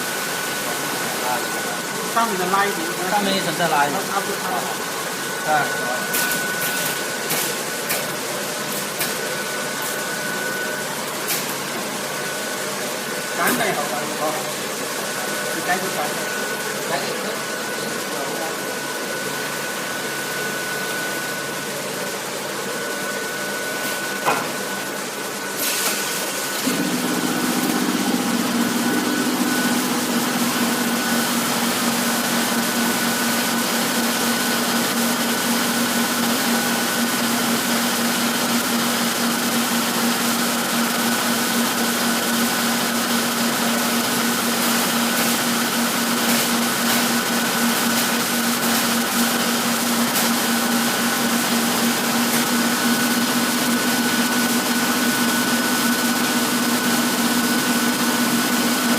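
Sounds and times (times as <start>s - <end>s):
welding machine hum and whine: 0.0s - 58.9s
low machine hum: 26.2s - 33.4s.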